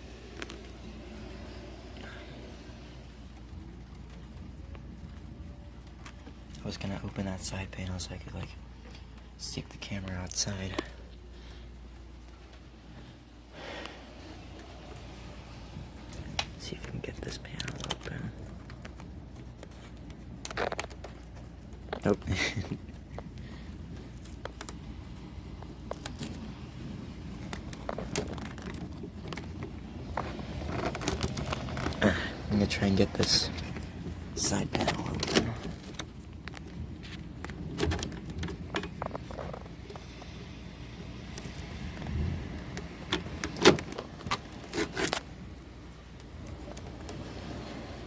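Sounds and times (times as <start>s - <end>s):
rain hissing: 0.0s - 5.5s, 31.6s - 36.2s, 47.0s - 48.0s
steady rain: 24.8s - 34.5s.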